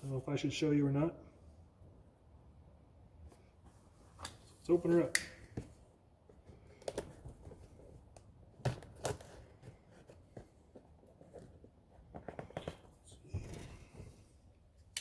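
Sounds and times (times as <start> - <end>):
cardboard box being handled: 6.4 - 14.2.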